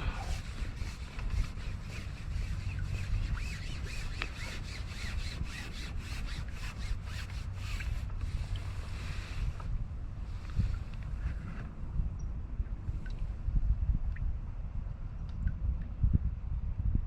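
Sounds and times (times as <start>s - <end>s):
rubbing and rustling handling: 0.0s - 9.7s
wind buffeting microphone: 0.0s - 17.0s.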